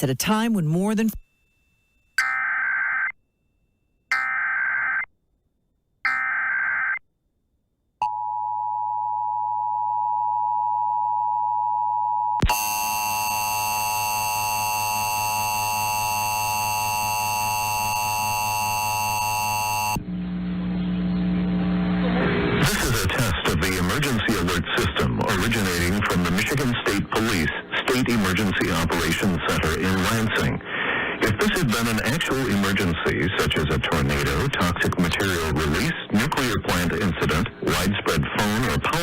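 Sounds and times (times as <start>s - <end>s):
screechy digital data bursts: 4.1s - 5.1s, 12.5s - 20.0s
harsh buzzy steady tone: 12.4s - 39.0s.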